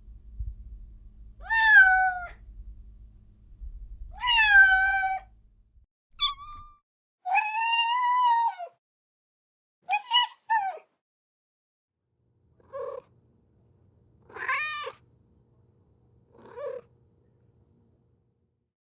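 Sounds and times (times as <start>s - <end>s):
cat meowing: 1.4s - 2.4s, 4.1s - 5.3s, 6.2s - 8.7s, 9.9s - 10.9s, 14.3s - 15.0s, 16.4s - 16.9s.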